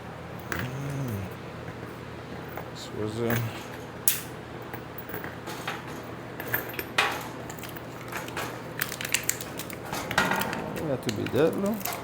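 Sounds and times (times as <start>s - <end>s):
chair parts and screws clinking: 2.4s - 12.0s.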